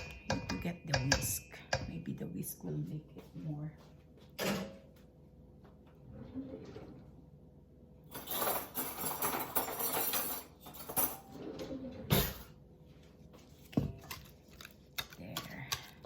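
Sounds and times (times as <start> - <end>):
whisk mashing in a bowl: 13.6 - 16.0.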